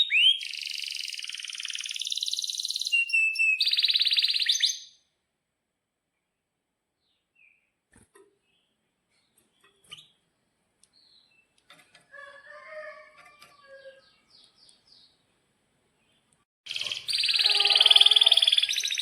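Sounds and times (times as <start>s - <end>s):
canary chirps and calls: 0.0s - 5.0s, 8.5s - 10.2s, 11.0s - 15.2s, 16.7s - 19.0s
canary fast trill: 16.7s - 19.0s.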